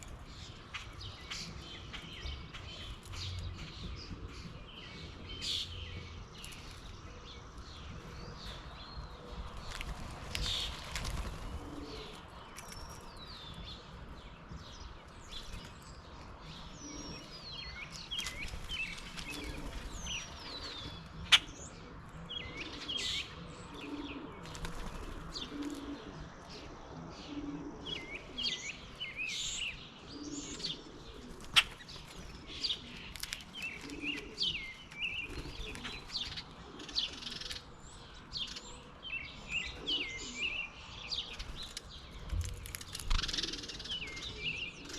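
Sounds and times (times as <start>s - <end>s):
songbirds chirping: 0.0s - 44.9s.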